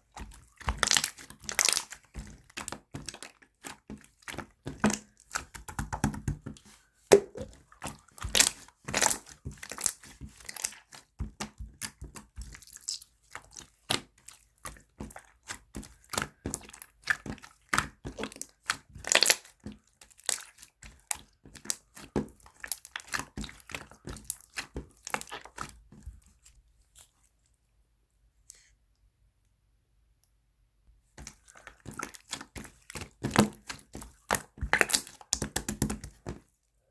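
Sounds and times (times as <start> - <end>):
slime crackling and popping: 0.2 - 6.4, 8.2 - 14.1, 15.0 - 25.8, 31.6 - 36.3.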